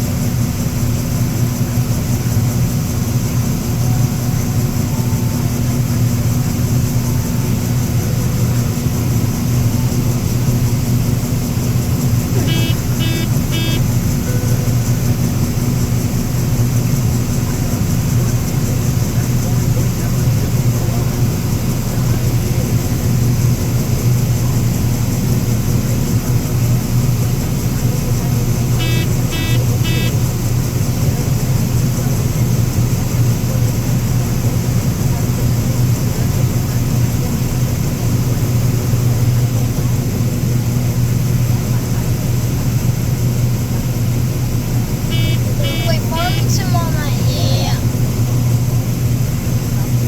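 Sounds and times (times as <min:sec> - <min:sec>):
machinery engine droning: 0:00.0 - 0:22.7, 0:27.5 - 0:32.5, 0:45.0 - 0:48.2
short electronic beeps: 0:12.4 - 0:13.9, 0:28.8 - 0:30.1, 0:45.1 - 0:47.8.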